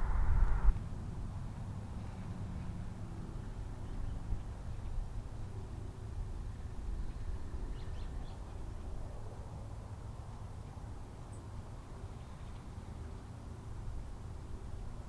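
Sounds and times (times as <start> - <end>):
steady low rumble: 0.0 - 0.8.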